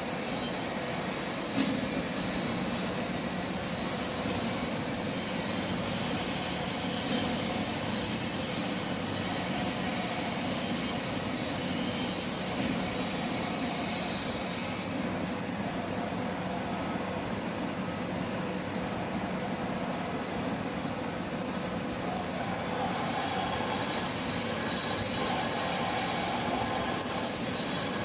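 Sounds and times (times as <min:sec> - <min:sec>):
machine humming: 0:18.8 - 0:28.0.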